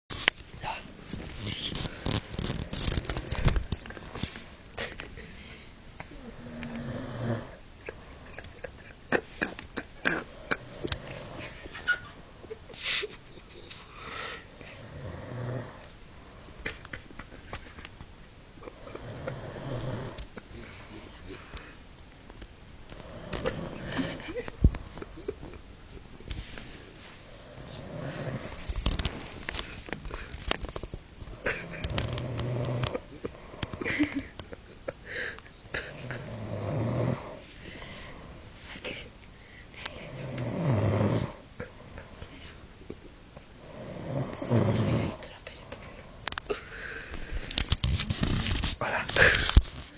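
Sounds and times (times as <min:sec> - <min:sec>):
person snoring: 0:00.6 - 0:04.2, 0:06.2 - 0:12.0, 0:13.9 - 0:15.9, 0:18.6 - 0:21.6, 0:23.0 - 0:24.5, 0:27.2 - 0:29.0, 0:31.3 - 0:34.0, 0:35.1 - 0:38.4, 0:39.8 - 0:41.4, 0:43.6 - 0:45.8
small clicks and breaths: 0:01.1 - 0:06.7, 0:15.8 - 0:18.2, 0:21.3 - 0:25.6, 0:28.5 - 0:35.8, 0:37.6 - 0:40.0, 0:45.2 - 0:49.9.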